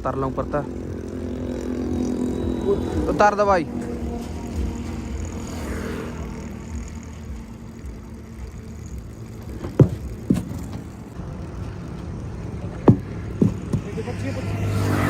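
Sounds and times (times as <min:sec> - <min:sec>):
low engine hum: 0:00.0 - 0:15.0
sharp knocks: 0:12.8 - 0:14.0.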